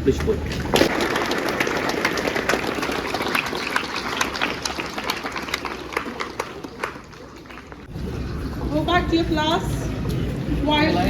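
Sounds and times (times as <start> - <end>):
crowd applauding: 0.6 - 7.9.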